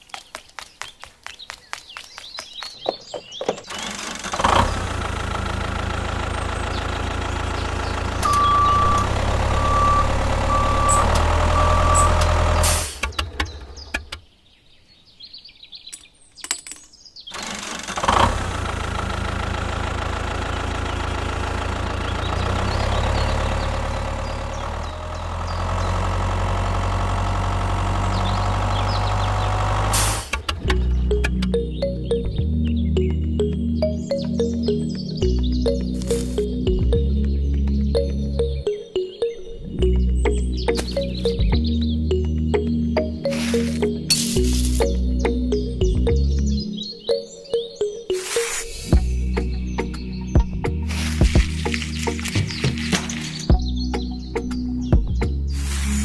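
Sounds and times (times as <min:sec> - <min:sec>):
engine running: 0:03.5 - 0:14.0, 0:17.3 - 0:47.2, 0:48.0 - 0:56.0
short beeps: 0:08.2 - 0:12.3.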